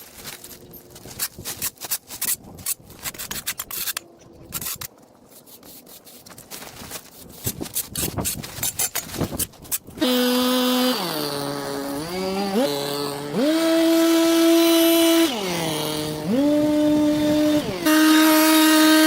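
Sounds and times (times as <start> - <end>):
small gasoline engine revving: 10.0 - 19.0.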